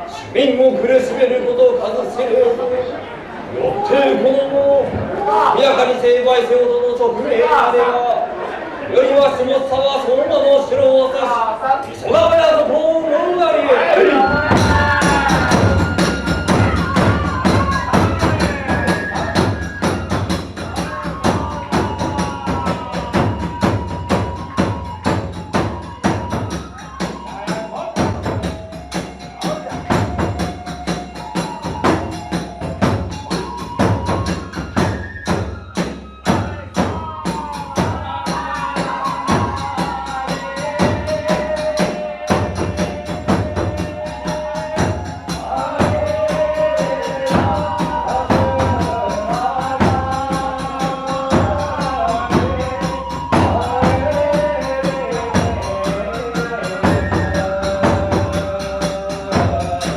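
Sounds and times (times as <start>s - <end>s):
flute melody: 13.8s - 59.9s
big drum strikes: 14.2s - 27.3s.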